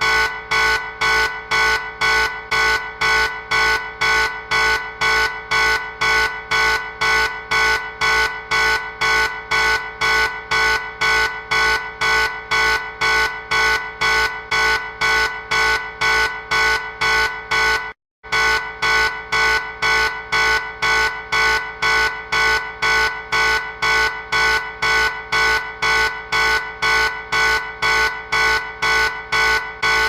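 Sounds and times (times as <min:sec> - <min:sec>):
harsh buzzing alarm beeps: 0:00.0 - 0:30.0.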